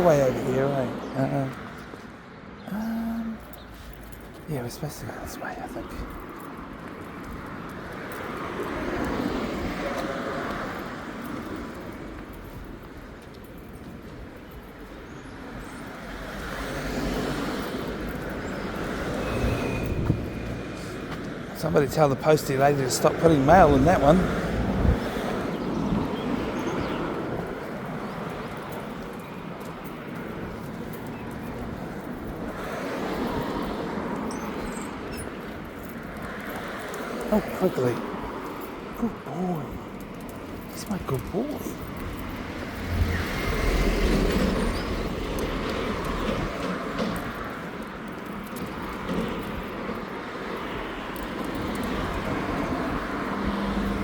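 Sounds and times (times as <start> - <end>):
road traffic passing: 0.0 - 54.0
vehicle passing by: 41.2 - 47.2.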